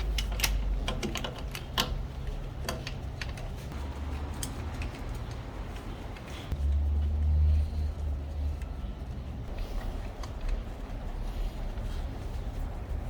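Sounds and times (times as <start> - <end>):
small metallic clicks and taps: 0.0 - 3.6.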